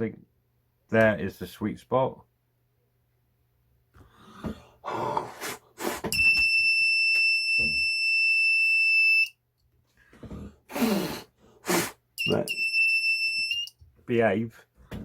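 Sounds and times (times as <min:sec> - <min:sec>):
breathy puffs: 0:04.0 - 0:06.1
high buzzer beep: 0:06.1 - 0:09.4, 0:12.2 - 0:13.7.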